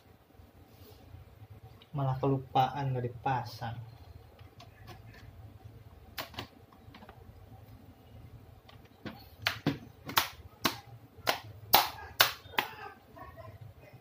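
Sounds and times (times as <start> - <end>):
faint low hum: 0.0 - 14.0
laptop parts clicking: 6.2 - 7.2.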